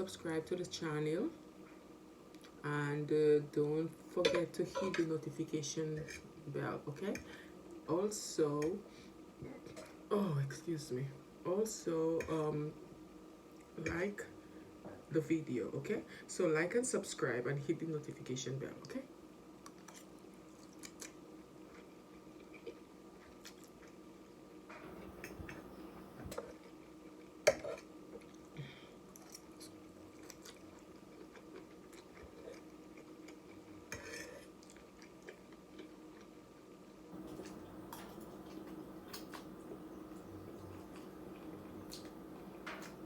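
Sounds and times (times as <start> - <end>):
faint steady hum: 0.0 - 43.0
person chewing food: 19.6 - 24.0, 24.8 - 36.4, 37.2 - 43.0.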